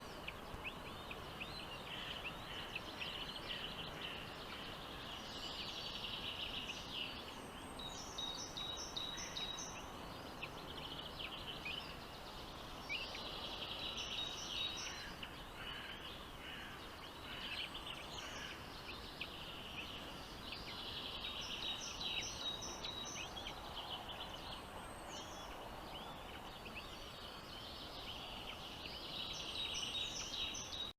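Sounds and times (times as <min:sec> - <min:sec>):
steady hiss: 0:00.0 - 0:30.9
nestlings chirping: 0:16.8 - 0:30.7.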